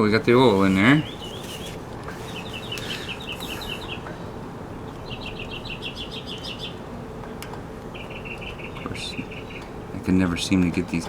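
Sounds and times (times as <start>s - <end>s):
songbird chirping trills: 0.4s - 4.2s, 4.8s - 9.8s.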